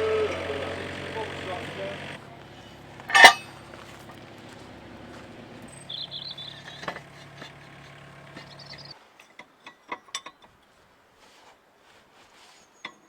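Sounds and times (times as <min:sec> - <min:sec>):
engine idling hum: 0:00.0 - 0:09.0
high bird chirp: 0:05.7 - 0:06.9, 0:08.4 - 0:08.9.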